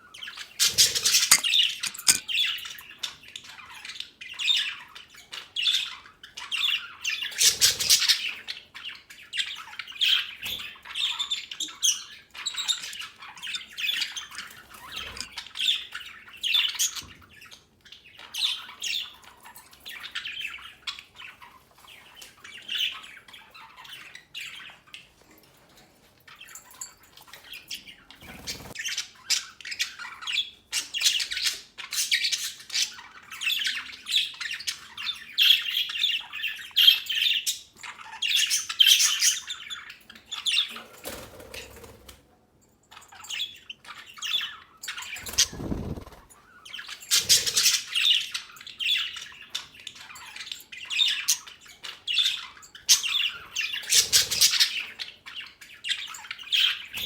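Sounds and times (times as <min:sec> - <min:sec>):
budgerigars chattering: 0:00.0 - 0:19.3, 0:44.2 - 0:57.0.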